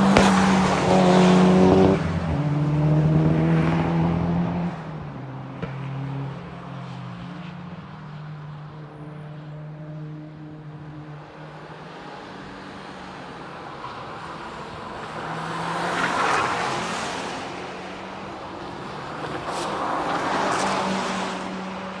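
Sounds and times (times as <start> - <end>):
exhaust cracks: 0.0 - 2.3
car engine passing: 0.0 - 5.0.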